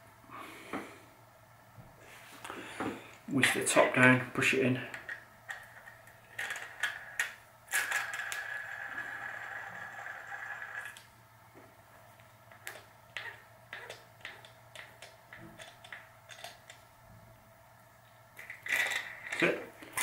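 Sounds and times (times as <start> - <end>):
bearing parts scraping and whirring: 5.0 - 11.0.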